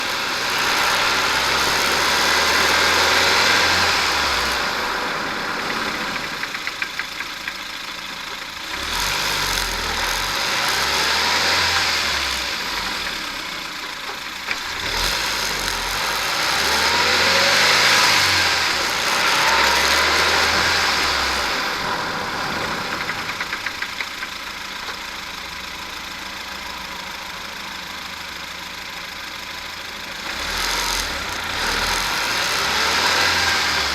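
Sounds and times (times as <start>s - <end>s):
car road noise: 0.0s - 7.8s, 8.6s - 27.6s, 30.2s - 33.9s
rapid clicks while braking: 0.0s - 26.4s, 30.2s - 33.9s.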